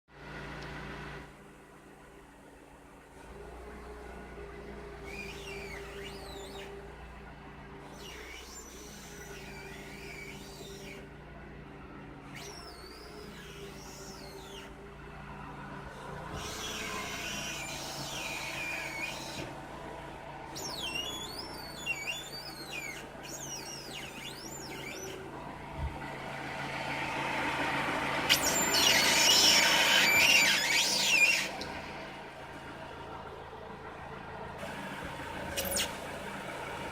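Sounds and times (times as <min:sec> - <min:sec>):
car squeaking: 0:05.0 - 0:06.8, 0:07.8 - 0:11.0, 0:12.3 - 0:14.8, 0:16.3 - 0:19.6, 0:20.5 - 0:25.3, 0:28.3 - 0:32.0, 0:35.5 - 0:36.1.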